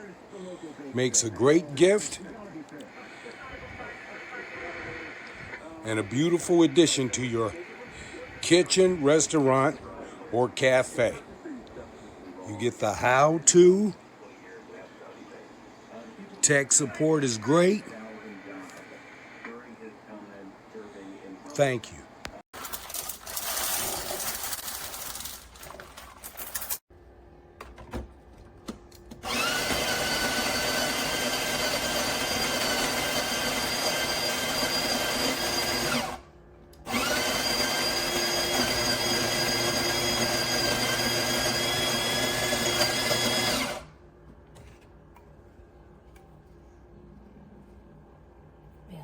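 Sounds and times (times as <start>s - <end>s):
grinder motor whine: 29.2s - 36.2s, 36.9s - 43.9s.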